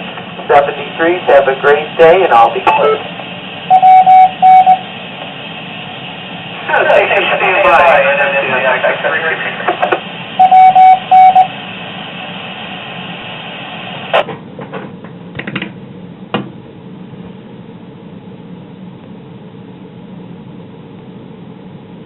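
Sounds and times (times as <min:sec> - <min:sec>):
radio hiss: 0:00.0 - 0:14.2.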